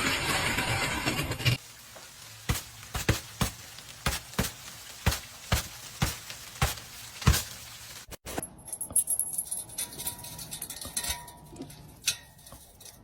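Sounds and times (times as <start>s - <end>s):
ice cracking: 1.6s - 8.2s.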